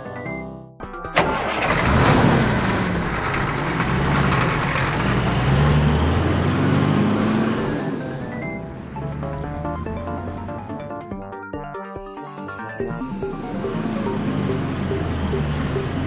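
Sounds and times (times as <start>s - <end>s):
engine starting crack: 1.2s - 2.5s
engine revving rumble: 1.4s - 8.3s.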